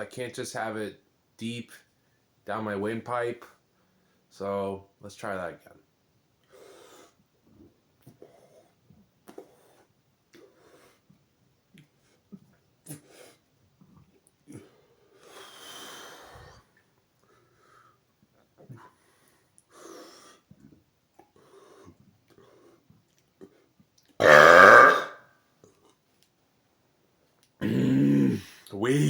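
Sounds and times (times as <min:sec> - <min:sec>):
loud breathy burp: 0:24.2 - 0:25.2, 0:27.6 - 0:28.4.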